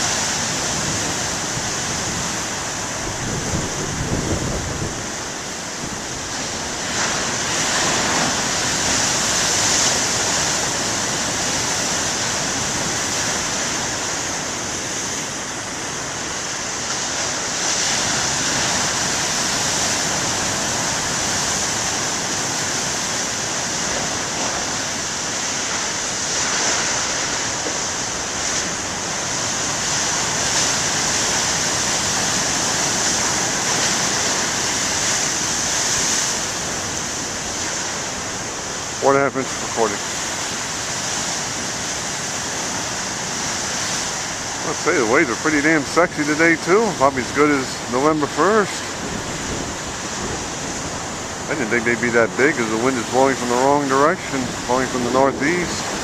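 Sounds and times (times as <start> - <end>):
ocean waves crashing: 0.0 - 56.0.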